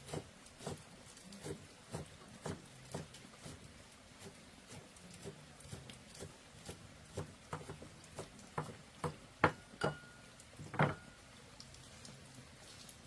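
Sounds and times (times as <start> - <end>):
irregular knocks and taps: 7.2 - 11.1.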